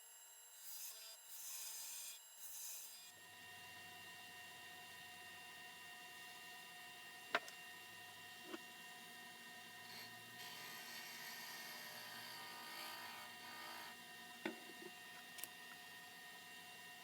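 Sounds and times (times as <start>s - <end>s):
wood lathe whirring hiss: 7.8s - 17.0s.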